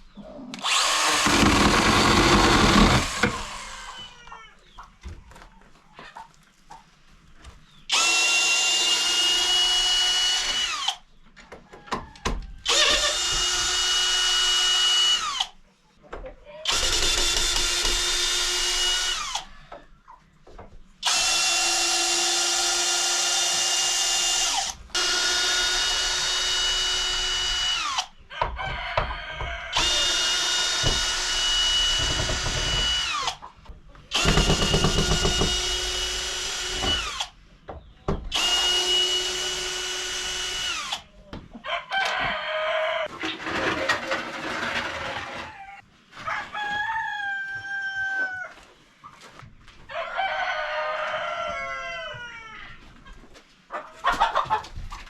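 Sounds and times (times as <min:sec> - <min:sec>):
power drill whining: 0:00.6 - 0:04.4, 0:07.9 - 0:11.0, 0:12.7 - 0:15.5, 0:16.7 - 0:19.5, 0:21.0 - 0:28.1, 0:29.7 - 0:33.4, 0:34.1 - 0:37.3, 0:38.3 - 0:41.0
chickens clucking: 0:04.2 - 0:07.8, 0:19.5 - 0:20.8, 0:48.2 - 0:49.8, 0:50.9 - 0:55.0
rooster crowing: 0:28.3 - 0:29.9, 0:41.6 - 0:43.1, 0:46.2 - 0:48.6, 0:49.9 - 0:52.7.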